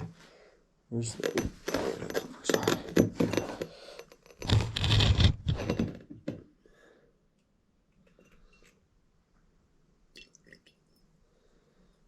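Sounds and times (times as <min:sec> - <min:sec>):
jangling clatter with thunks: 0:01.2 - 0:04.6.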